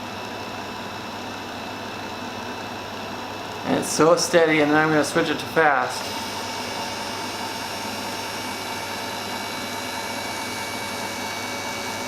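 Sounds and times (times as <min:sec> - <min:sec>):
electric caulk gun motor whining: 0:04.9 - 0:12.0.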